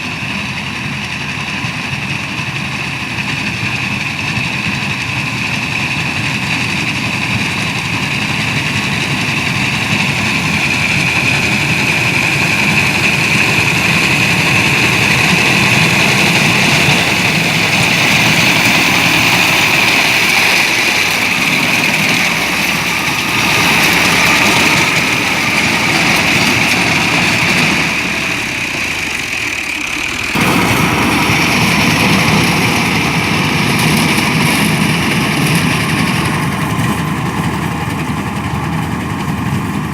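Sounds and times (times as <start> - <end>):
harvesting machinery engine: 0.0 - 39.9
mechanical whine: 2.6 - 39.9.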